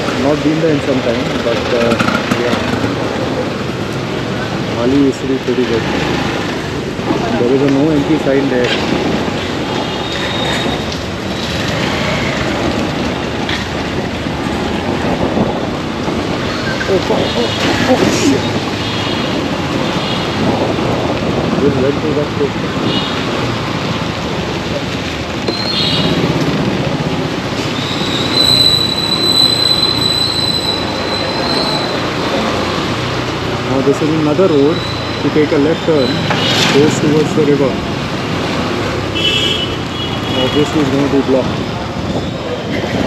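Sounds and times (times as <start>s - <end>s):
tyres on road: 0.0s - 43.0s
high-pitched metallic squeal: 27.8s - 32.1s.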